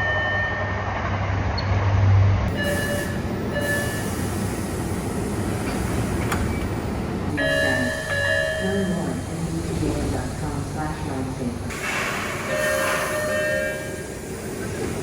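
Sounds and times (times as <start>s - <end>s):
train rumble: 0.0s - 15.0s
two-tone door chime: 12.4s - 14.1s.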